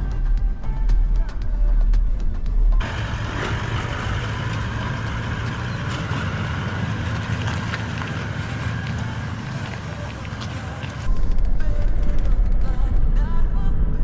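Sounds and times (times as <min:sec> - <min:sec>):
engine and tyres rumbling: 0:00.0 - 0:14.0
vehicle rattles and knocks: 0:02.8 - 0:09.6.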